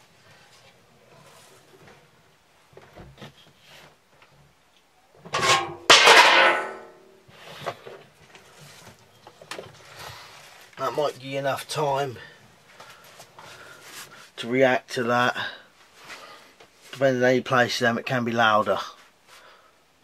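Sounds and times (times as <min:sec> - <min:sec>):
metal tins clanging: 0:05.3 - 0:07.0.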